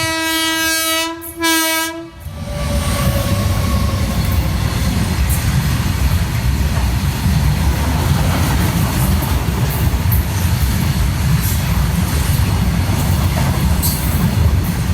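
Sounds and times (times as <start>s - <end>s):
train horn: 0.0s - 4.4s
train rumbling on rails: 0.0s - 14.9s.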